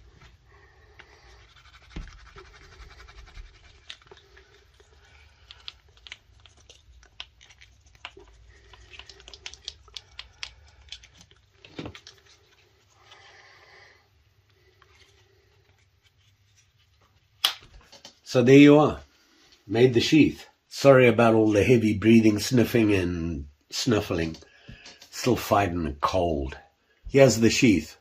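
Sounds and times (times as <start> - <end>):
heavy breathing: 0.0 - 5.9, 12.3 - 15.8, 24.4 - 25.2
hands scratching and clicking: 1.4 - 13.2.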